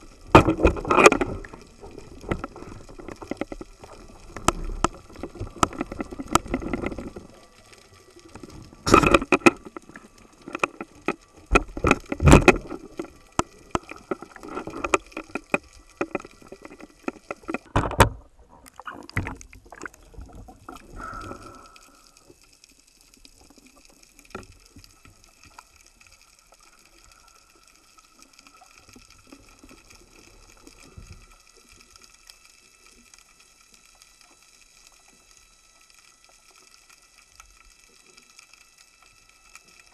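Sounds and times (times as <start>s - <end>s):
water sloshing and splashing: 0.0s - 22.1s
faint steady whine: 0.0s - 39.9s.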